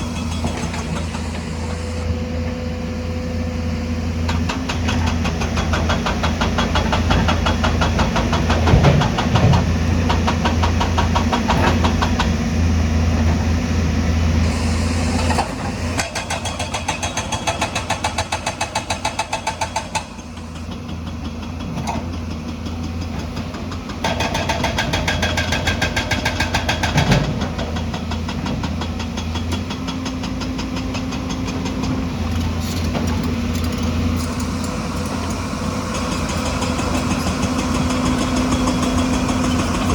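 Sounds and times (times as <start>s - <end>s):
diesel engine running: 0.0s - 7.5s, 8.3s - 16.0s, 27.3s - 39.9s
hydraulic breaker hammering rock: 4.3s - 12.4s, 14.5s - 22.2s, 22.9s - 39.9s.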